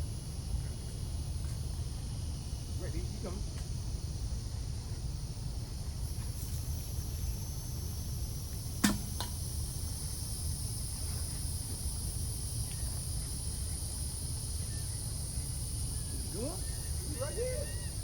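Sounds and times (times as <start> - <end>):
sharp click: 8.8 - 9.3.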